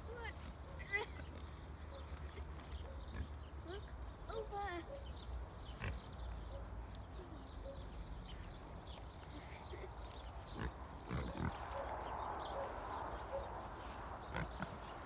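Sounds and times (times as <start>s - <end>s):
piglets grunting: 10.5s - 11.6s, 14.2s - 15.0s.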